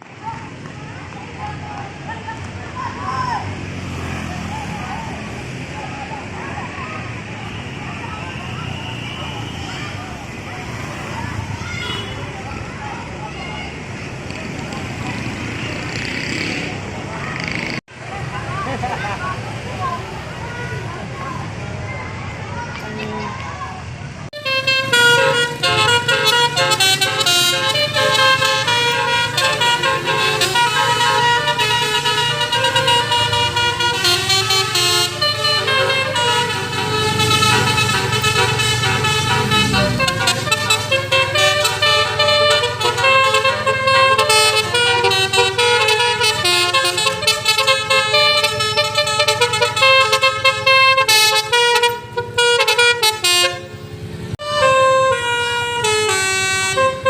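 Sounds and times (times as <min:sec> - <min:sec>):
musical car horn melody: 0:24.4 - 0:57.0.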